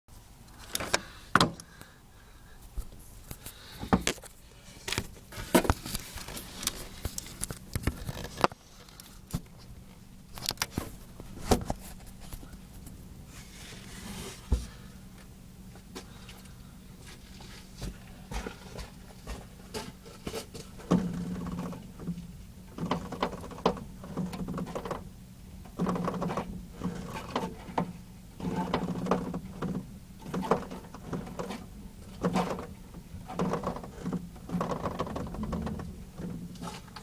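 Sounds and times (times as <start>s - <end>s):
car creaking while turning: 25.7s - 37.0s.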